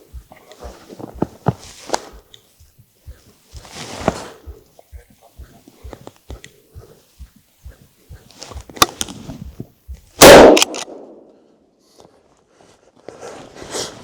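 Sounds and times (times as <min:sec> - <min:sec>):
footsteps in snow: 0:00.0 - 0:10.2
rustling movement: 0:00.0 - 0:11.3
rifle shot with echo: 0:10.2 - 0:11.3.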